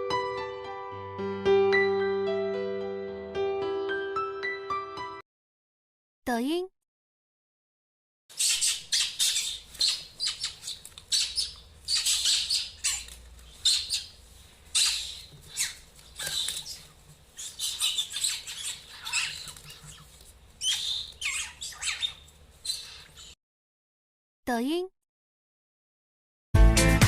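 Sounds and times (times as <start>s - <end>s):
pet bird squawking and chirping: 8.3s - 23.4s.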